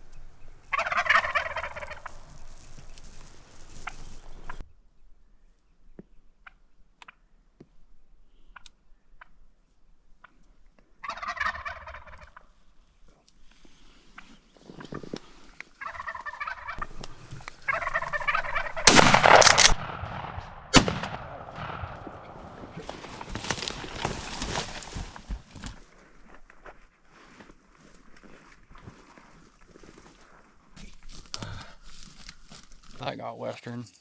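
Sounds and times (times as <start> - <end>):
wild turkey gobbling: 0.0 - 4.6, 11.0 - 12.2, 15.8 - 19.7
sharp crack: 0.1 - 4.6, 16.8 - 25.0.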